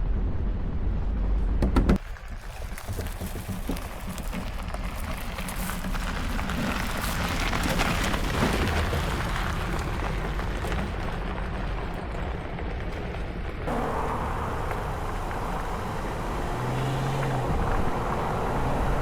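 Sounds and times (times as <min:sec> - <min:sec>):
off-road vehicle engine: 0:00.0 - 0:19.0
tyre rumble on dirt: 0:01.7 - 0:13.1.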